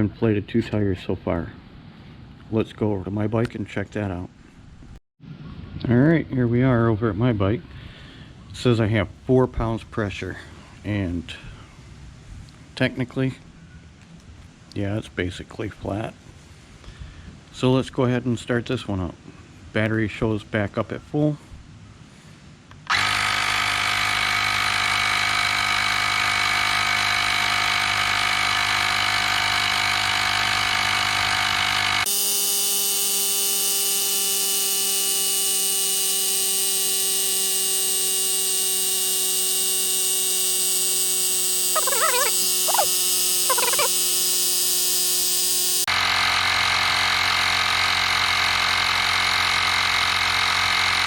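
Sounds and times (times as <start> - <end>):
tire inflator pump humming: 22.9 - 51.0.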